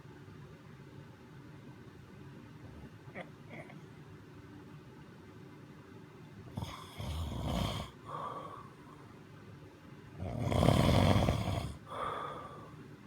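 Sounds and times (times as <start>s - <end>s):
loud rough snoring: 6.6s - 8.4s, 10.2s - 12.6s.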